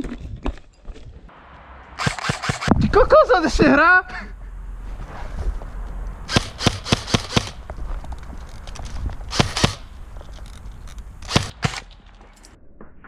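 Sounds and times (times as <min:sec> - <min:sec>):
airsoft gun shots: 0:02.0 - 0:02.9, 0:06.3 - 0:07.6, 0:09.3 - 0:09.8.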